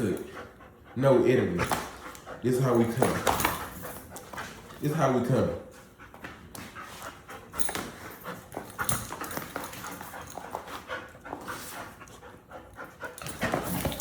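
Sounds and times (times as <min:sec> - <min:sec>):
dog panting: 0:00.0 - 0:14.0
knocks and scuffs: 0:02.9 - 0:04.9, 0:05.6 - 0:12.1, 0:12.9 - 0:14.0.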